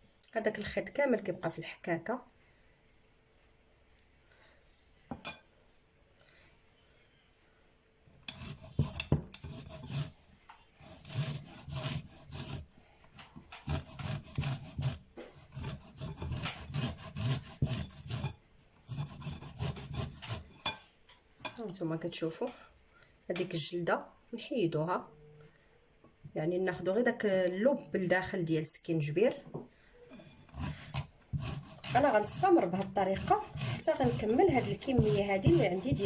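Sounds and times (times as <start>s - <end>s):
ginger scraping on a grater: 8.3s - 10.2s, 10.8s - 12.6s, 13.6s - 20.6s, 30.3s - 36.0s.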